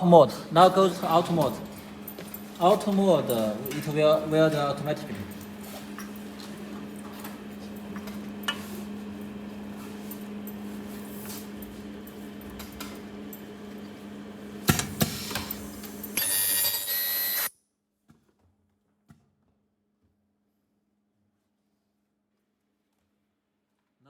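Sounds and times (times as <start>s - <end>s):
machine hum: 11.8s - 17.5s
high-pitched ultrasonic weld screech: 16.2s - 17.5s.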